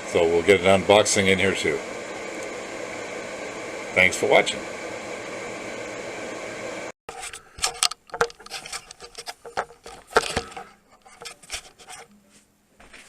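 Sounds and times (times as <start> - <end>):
objects being handled: 7.1 - 12.2
rubbing: 8.1 - 12.1.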